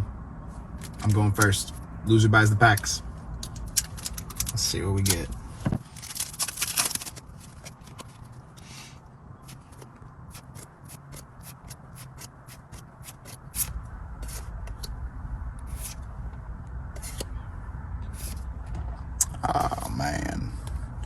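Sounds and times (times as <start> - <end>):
low steady rumble: 0.0 - 21.0
cards crinkling and flicking: 3.7 - 8.4.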